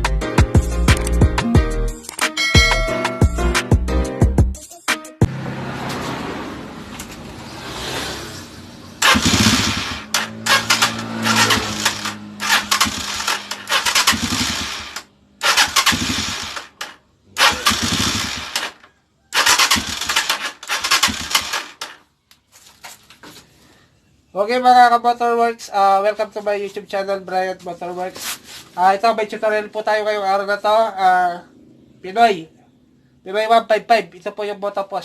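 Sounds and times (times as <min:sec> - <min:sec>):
motorcycle engine starting: 0:05.2 - 0:22.0.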